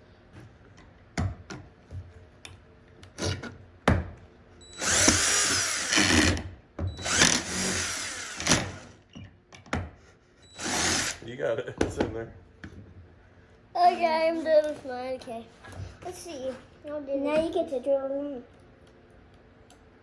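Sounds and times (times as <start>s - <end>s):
drill driving screw into wood: 4.7s - 9.0s, 10.5s - 11.2s.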